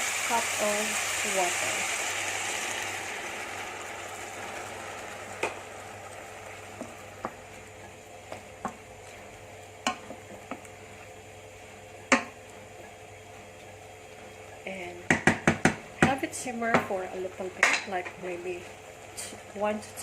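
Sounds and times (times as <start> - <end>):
water poured into pan: 0.0 - 7.2
vegetables sizzling in a pan: 0.0 - 20.0.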